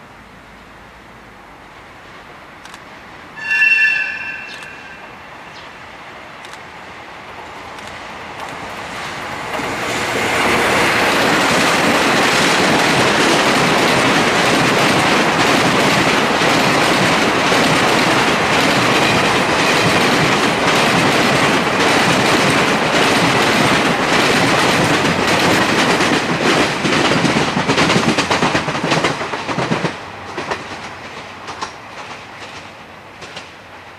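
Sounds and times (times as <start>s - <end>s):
train wheels on rails: 1.7s - 33.9s
clickety-clack over rail joints: 7.4s - 33.9s.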